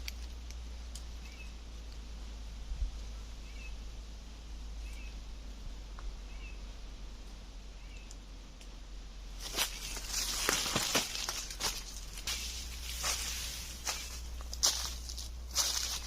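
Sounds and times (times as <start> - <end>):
rustling of dry leaves and twigs: 0.0 - 16.0
small bird chirping: 1.2 - 1.6, 3.4 - 3.9, 4.8 - 5.3, 6.0 - 6.7, 7.7 - 8.3.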